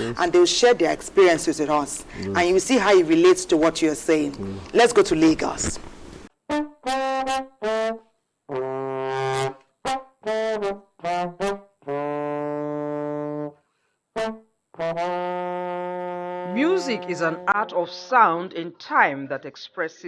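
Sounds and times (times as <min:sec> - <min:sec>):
solo trombone playing: 0:02.1 - 0:03.2, 0:04.4 - 0:04.8, 0:06.5 - 0:13.6, 0:14.2 - 0:17.6.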